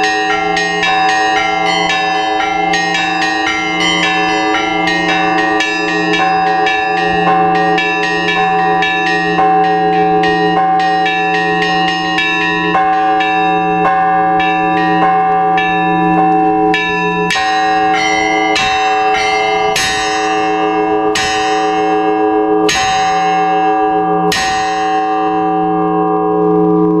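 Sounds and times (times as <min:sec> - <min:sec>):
church bells ringing: 0:00.0 - 0:27.0
large bell humming: 0:00.0 - 0:27.0.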